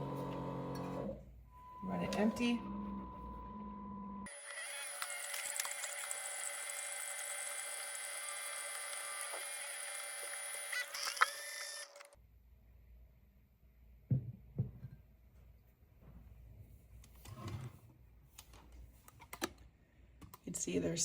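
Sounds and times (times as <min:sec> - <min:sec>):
coffee maker pump humming: 0:00.0 - 0:12.1.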